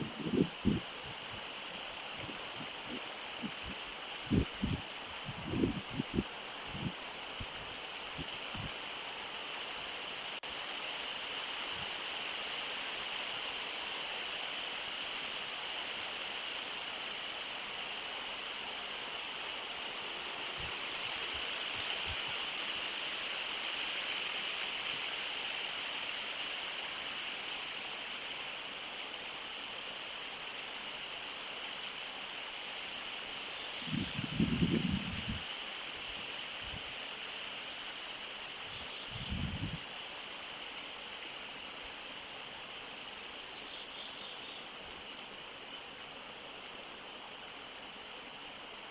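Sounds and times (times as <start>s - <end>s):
even outdoor hiss: 0.0s - 48.9s.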